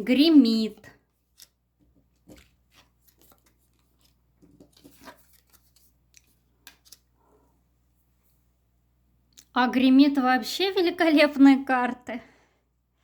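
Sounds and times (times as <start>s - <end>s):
cards clicking and rustling: 1.3s - 7.1s.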